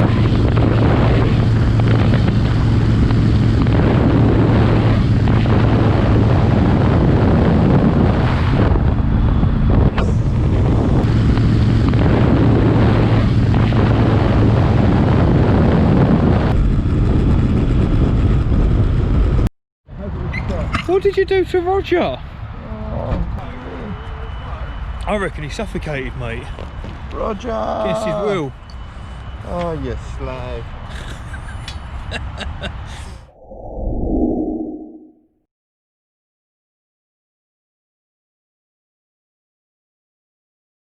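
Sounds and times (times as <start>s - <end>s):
motorcycle engine hum: 0.0s - 19.5s
wind buffeting microphone: 0.0s - 20.7s.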